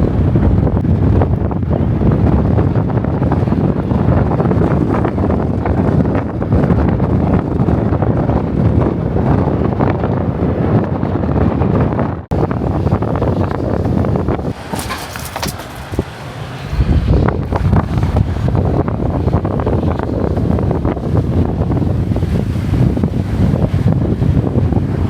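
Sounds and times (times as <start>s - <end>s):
wind buffeting microphone: 0.0s - 25.0s.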